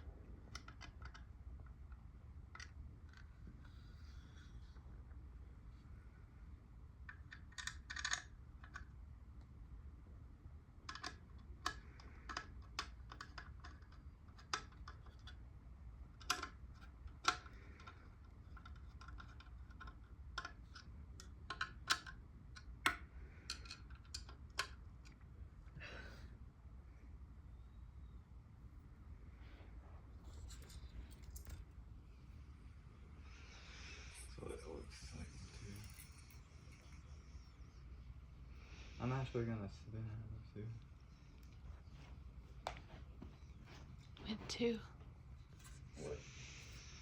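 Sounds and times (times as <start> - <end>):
low steady hum: 0.0 - 47.0
metal parts clicking and tapping: 7.1 - 8.9.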